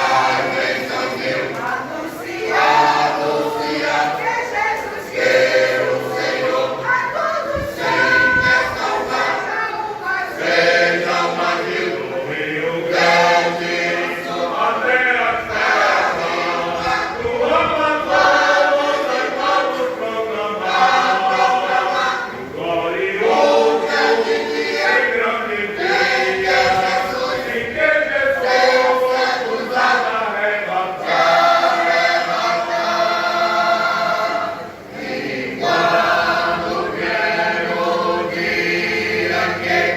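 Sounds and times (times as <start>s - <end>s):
choir singing a gospel hymn: 0.0s - 39.9s.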